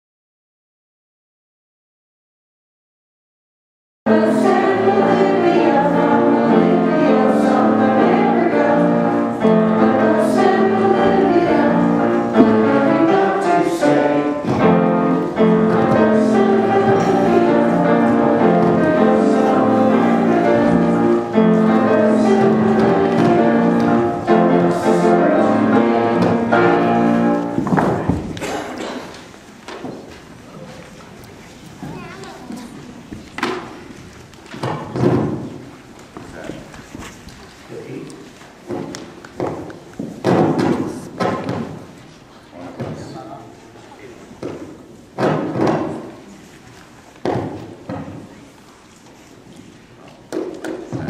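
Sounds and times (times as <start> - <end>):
choir singing: 4.1 - 28.1.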